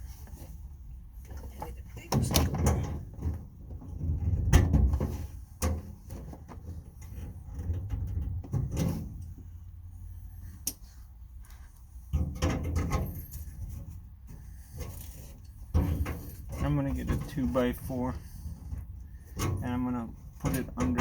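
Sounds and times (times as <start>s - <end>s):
metal drawers sliding and clanking: 2.2s - 9.4s, 12.2s - 14.0s, 14.6s - 21.0s.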